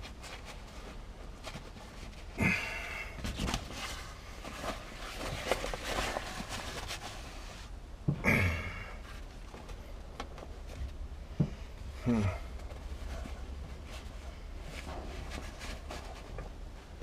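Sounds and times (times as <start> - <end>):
fabric rustling: 3.3 - 7.8, 12.5 - 17.0
man exhaling hard: 8.2 - 9.0.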